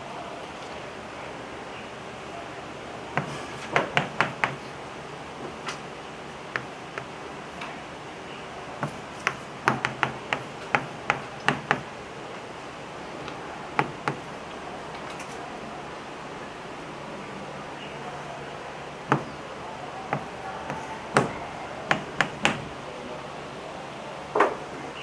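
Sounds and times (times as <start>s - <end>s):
room hiss: 0.0s - 25.0s
chalk tapping on blackboard: 3.2s - 4.7s, 6.5s - 7.2s, 8.8s - 11.9s, 13.8s - 14.3s, 19.1s - 19.4s, 20.1s - 22.7s.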